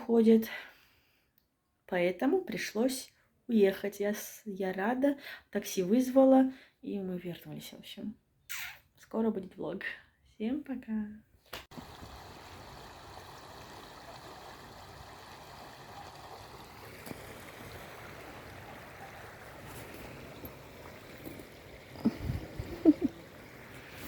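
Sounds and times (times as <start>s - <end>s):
river water rushing: 11.8s - 24.0s.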